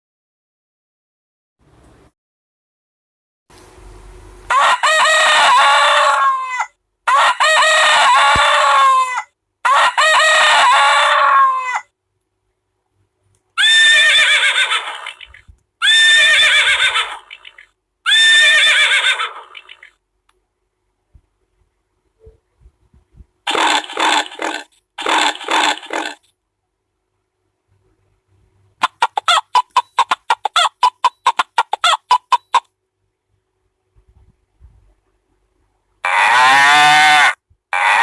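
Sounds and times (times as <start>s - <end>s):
recorded hen clucking: 4.5s - 11.9s, 23.5s - 26.2s, 28.8s - 32.7s
recorded rooster crowing: 4.5s - 11.9s, 36.0s - 38.0s.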